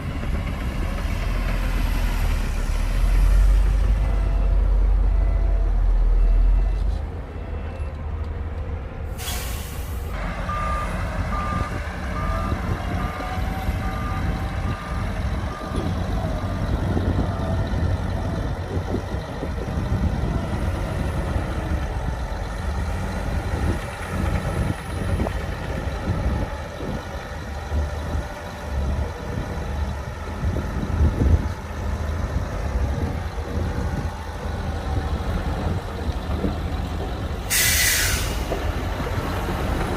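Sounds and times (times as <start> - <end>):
heavy diesel engines rumbling: 0.0 - 39.9
reversing alarm beeping: 3.8 - 8.1, 10.4 - 17.9
air hiss: 37.5 - 38.5.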